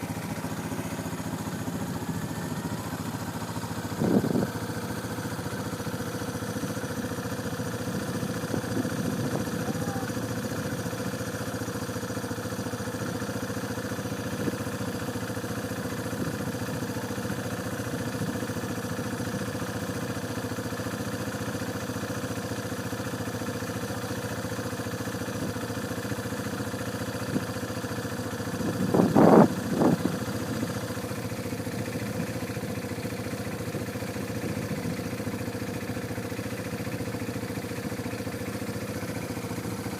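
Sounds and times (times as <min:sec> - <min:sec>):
vehicle engine humming: 0:00.0 - 0:22.2, 0:22.9 - 0:39.9.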